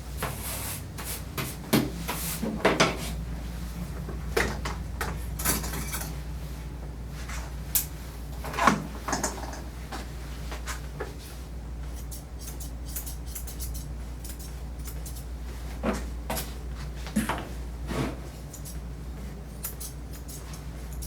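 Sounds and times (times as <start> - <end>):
steady low hum: 0.0 - 21.0
shears snipping dog fur: 11.8 - 15.4, 18.0 - 18.8, 19.5 - 21.0.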